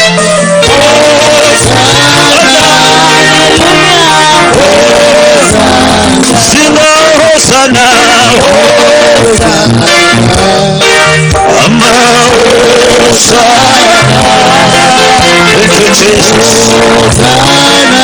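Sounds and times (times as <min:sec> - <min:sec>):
gospel worship song: 0:00.0 - 0:18.0.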